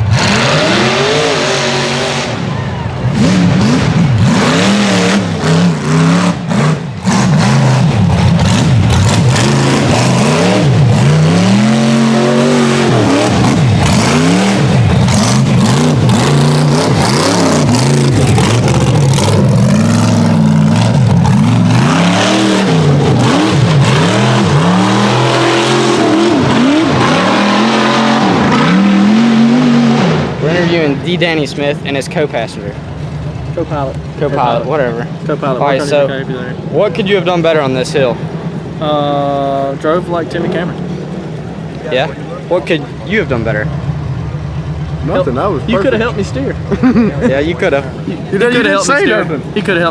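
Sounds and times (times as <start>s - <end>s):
engine revving hard: 0.0s - 31.6s.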